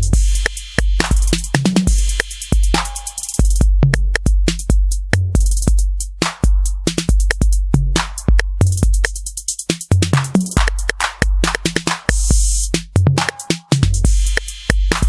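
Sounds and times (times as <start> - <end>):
hi-hats: 0.0 - 15.0
snare or clap hits: 0.4 - 3.4, 6.2 - 7.0, 8.0 - 8.5, 10.0 - 15.0.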